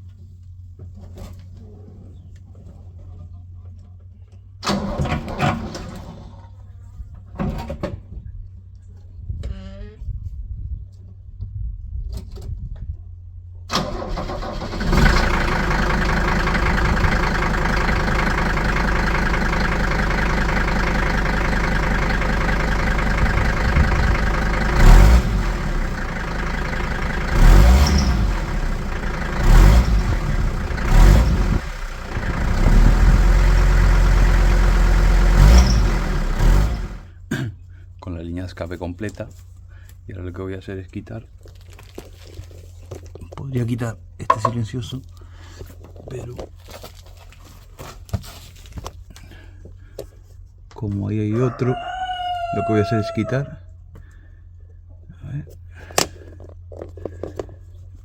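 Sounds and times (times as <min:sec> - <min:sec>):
diesel engine starting and idling: 0:04.6 - 0:06.6, 0:13.7 - 0:37.2
engine revving in blips: 0:13.8 - 0:37.1.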